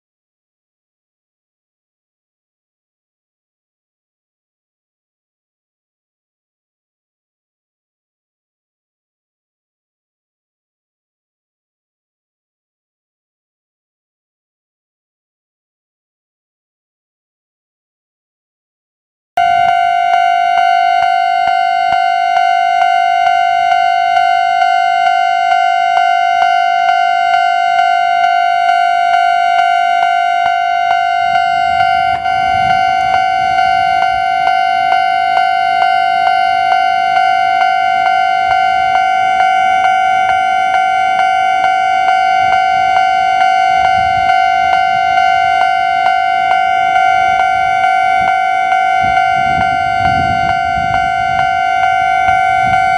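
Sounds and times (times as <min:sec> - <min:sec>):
level-crossing warning bell: 0:19.4 - 0:52.9.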